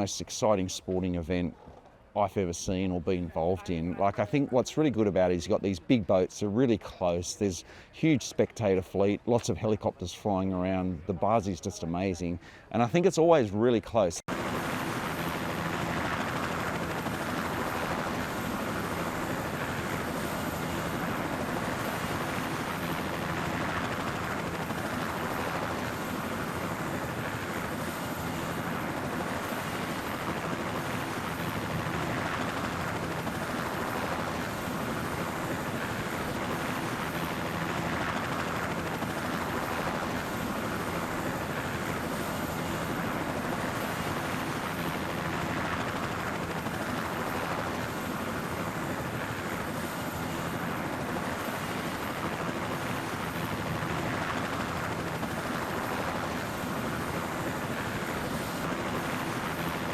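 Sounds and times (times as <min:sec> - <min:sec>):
helicopter engine and rotor: 0:14.2 - 0:59.9.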